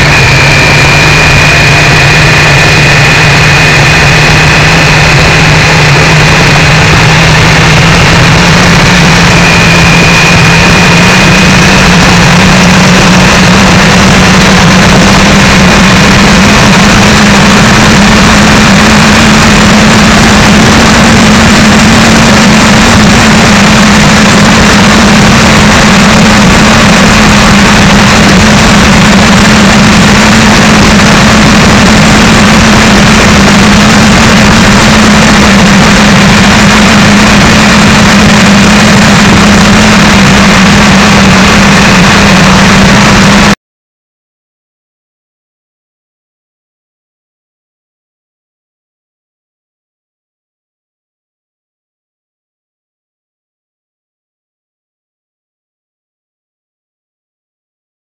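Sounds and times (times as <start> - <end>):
loud wind rush: 0.0 - 43.6
motorcycle engine running: 0.0 - 43.6.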